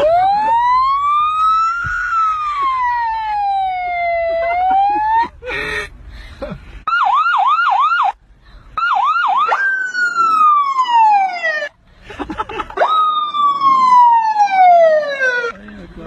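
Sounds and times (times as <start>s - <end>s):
siren yelping and wailing: 0.0s - 5.3s, 6.9s - 8.2s, 8.8s - 11.8s, 12.8s - 15.6s.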